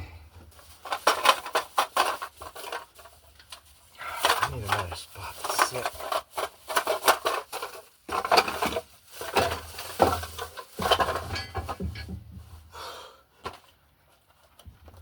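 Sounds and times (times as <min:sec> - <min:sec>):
rustling and knocks: 0:00.3 - 0:12.7, 0:13.4 - 0:15.0
man panting: 0:04.0 - 0:04.4, 0:12.7 - 0:13.3.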